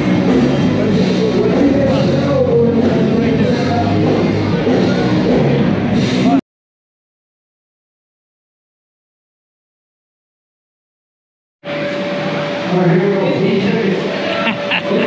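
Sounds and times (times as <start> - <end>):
rock music playing: 0.0 - 6.4, 14.3 - 15.0.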